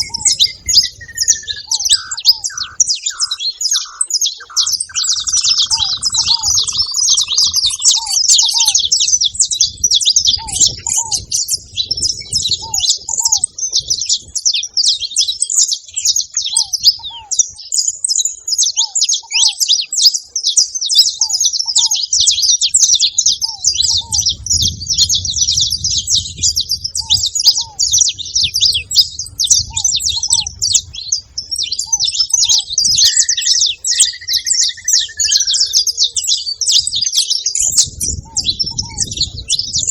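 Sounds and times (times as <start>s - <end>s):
whistled bird note: 0.0s - 8.8s, 29.6s - 36.4s
soft low bird notes: 0.0s - 9.0s, 23.5s - 36.2s
finches chirping: 0.0s - 39.9s.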